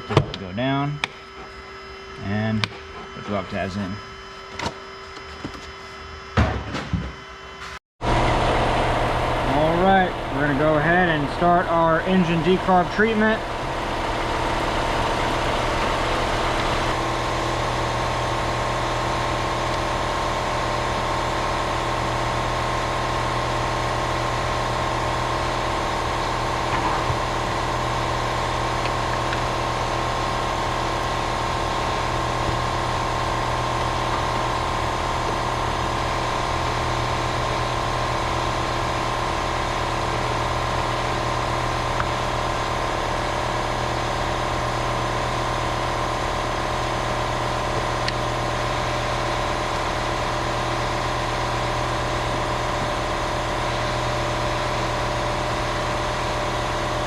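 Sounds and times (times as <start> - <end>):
car engine idling: 8.0 - 21.6, 23.6 - 55.5.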